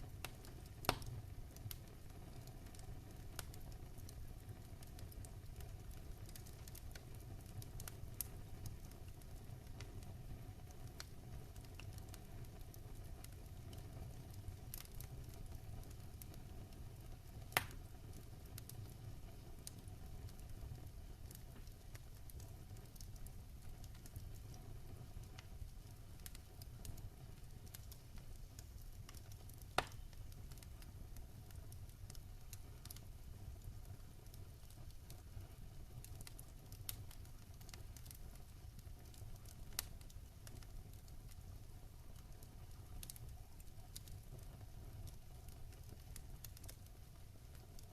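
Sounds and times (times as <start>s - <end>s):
wood fire crackling: 0.0s - 47.9s
sharp pops from fire: 0.2s - 10.0s, 10.6s - 47.9s.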